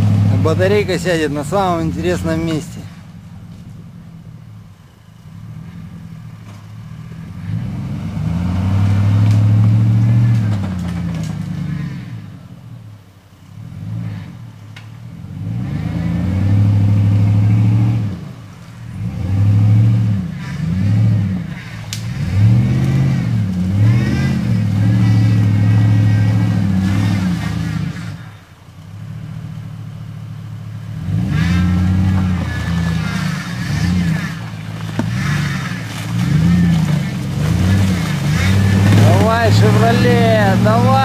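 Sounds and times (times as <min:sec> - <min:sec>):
car engine revving hard: 0:00.0 - 0:02.8, 0:07.0 - 0:12.3, 0:15.2 - 0:28.4, 0:30.8 - 0:41.0.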